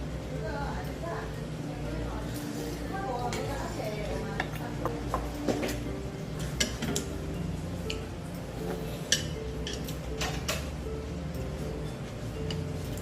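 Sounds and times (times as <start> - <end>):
spoon and chopsticks clinking on bowl: 4.2 - 7.2, 7.9 - 10.8, 12.4 - 13.0.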